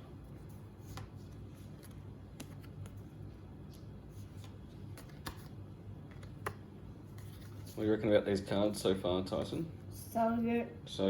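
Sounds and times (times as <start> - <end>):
low steady hum: 0.0 - 11.0
trading cards being flicked: 0.9 - 6.7.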